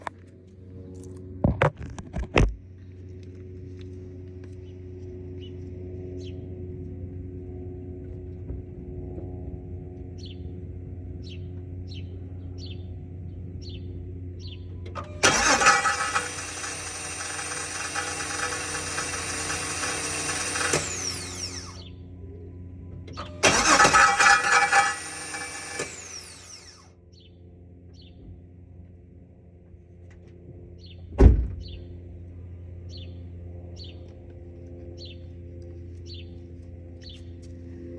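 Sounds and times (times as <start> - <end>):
car engine cranking: 14.9 - 21.9, 23.2 - 26.9.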